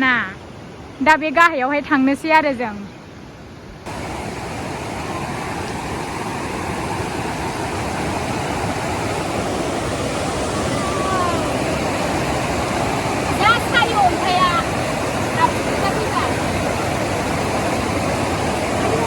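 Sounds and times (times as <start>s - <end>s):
fast-flowing water rushing: 3.8s - 19.0s
faint voice: 10.7s - 11.5s.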